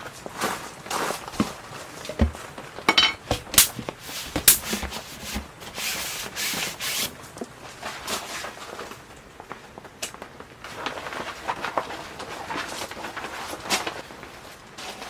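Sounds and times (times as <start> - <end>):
tableware knocking and rubbing: 2.1 - 6.0.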